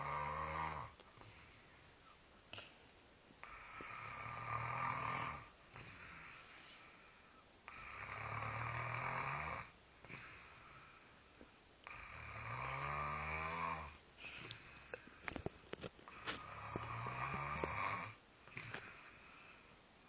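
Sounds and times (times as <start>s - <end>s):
person snoring: 0.0s - 1.5s, 3.4s - 6.4s, 7.7s - 10.8s, 11.8s - 14.0s, 16.1s - 19.4s.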